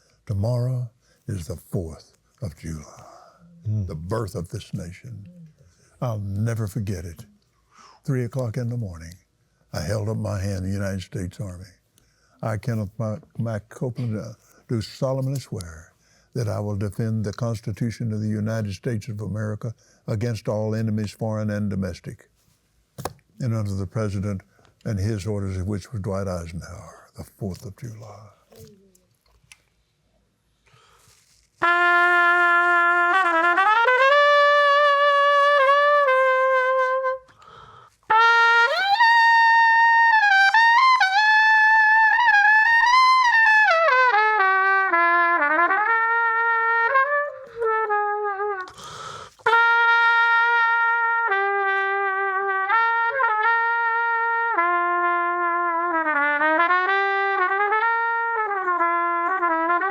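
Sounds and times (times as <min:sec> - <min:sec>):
solo trumpet slow melody: 0:31.1 - 0:59.9.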